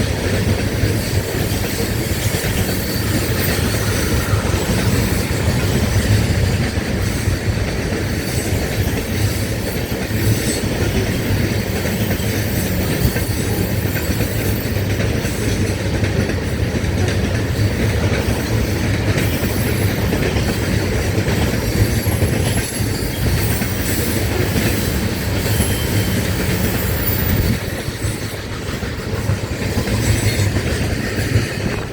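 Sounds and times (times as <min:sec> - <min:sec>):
train wheels clattering on rails: 0:00.0 - 0:31.9
high-pitched wheel squeal: 0:01.5 - 0:06.4, 0:21.7 - 0:28.3.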